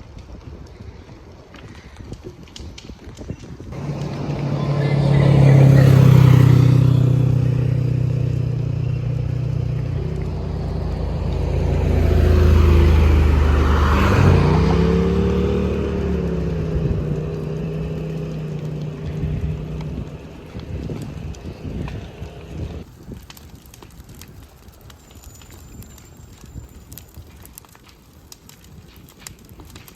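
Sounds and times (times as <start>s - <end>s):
vehicle engines passing: 3.7s - 22.9s
engine accelerating: 3.8s - 22.8s.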